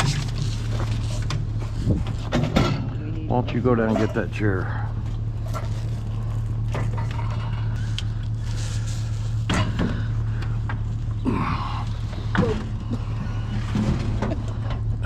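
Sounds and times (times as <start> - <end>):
truck engine idling: 0.0 - 15.0
knocks and clunks: 1.2 - 4.3.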